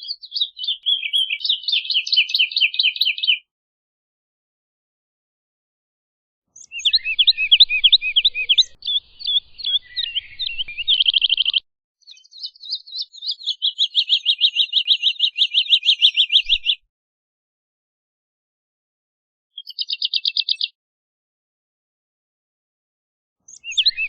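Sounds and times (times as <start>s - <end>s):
woodlark singing: 0.0s - 3.5s, 6.6s - 16.8s, 19.6s - 20.7s, 23.5s - 24.0s.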